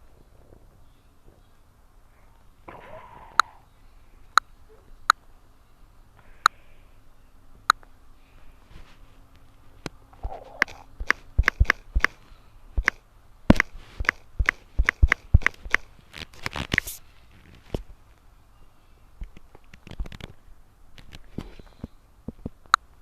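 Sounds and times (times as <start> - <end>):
sharp clicks and taps: 10.6 - 12.2, 12.8 - 15.9.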